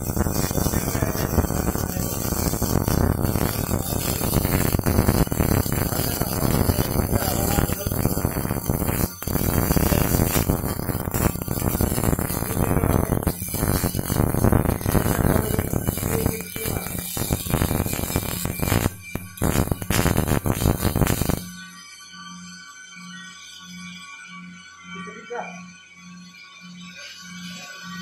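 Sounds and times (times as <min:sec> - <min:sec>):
welding arc crackling: 0:00.0 - 0:21.8.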